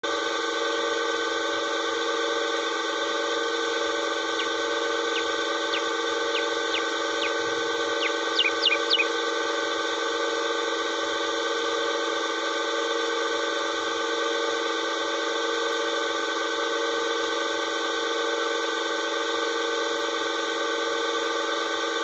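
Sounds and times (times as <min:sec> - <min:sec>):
steady drone: 0:03.0 - 0:10.3
bird chirping: 0:04.3 - 0:09.1.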